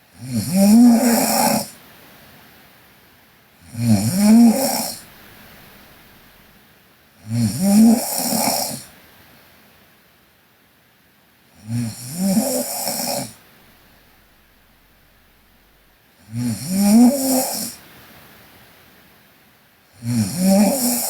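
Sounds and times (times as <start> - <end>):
woman snoring: 0.2 - 1.8, 3.6 - 5.1, 7.2 - 8.9, 11.6 - 13.4, 16.2 - 17.8, 20.0 - 21.0.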